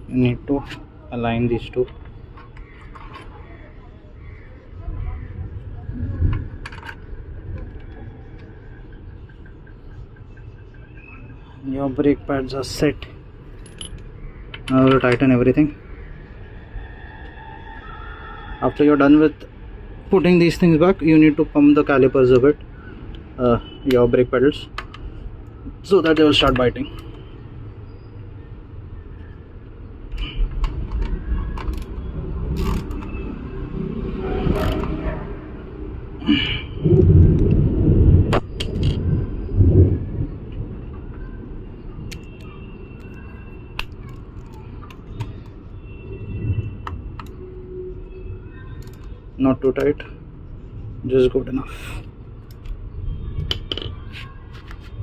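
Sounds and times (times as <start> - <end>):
metallic clinks of brake parts: 13.6 - 15.2
low rumble: 36.5 - 40.9.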